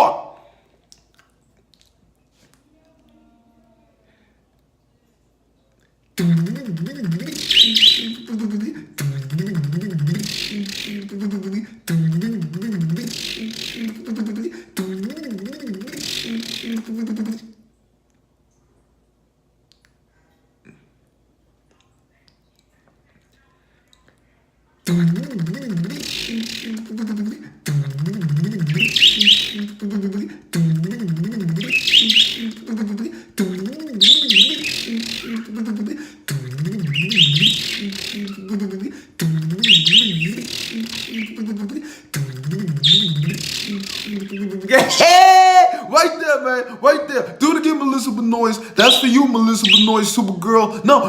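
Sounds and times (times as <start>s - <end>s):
man imitating engine cranking: 6.2s - 17.5s, 24.9s - 51.0s
bird chirping: 6.4s - 8.4s, 15.8s - 16.9s, 28.0s - 29.9s, 31.0s - 32.8s, 33.4s - 35.6s, 36.5s - 38.6s, 39.4s - 41.6s, 42.4s - 44.9s, 48.8s - 50.2s.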